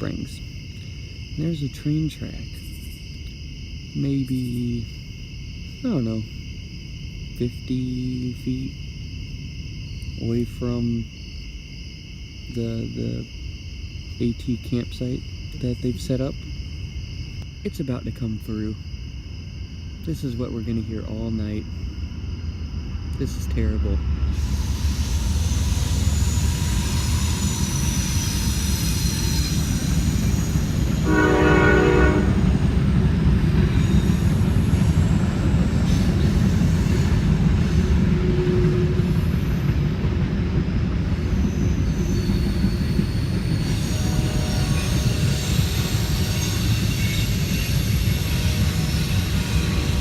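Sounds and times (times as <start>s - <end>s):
train cars rumbling on track: 0.0s - 11.8s, 19.5s - 50.0s
wheel squeal: 24.4s - 31.6s, 41.4s - 50.0s
train horn blast: 31.0s - 32.5s, 43.8s - 45.5s.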